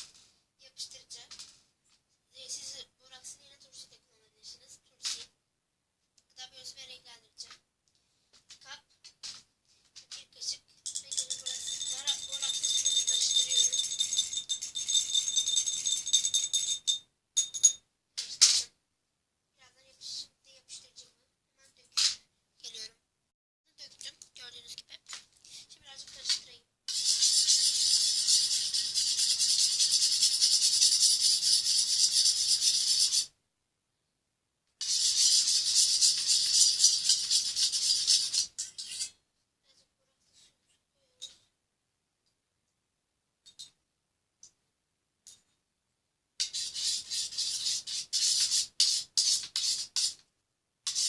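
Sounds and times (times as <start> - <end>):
high rattling scrape: 10.9 - 17.0, 26.9 - 33.3, 34.8 - 39.2.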